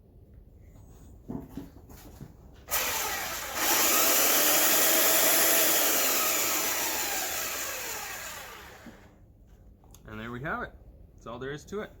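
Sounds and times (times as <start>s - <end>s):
belt sander motor running: 2.7s - 9.1s.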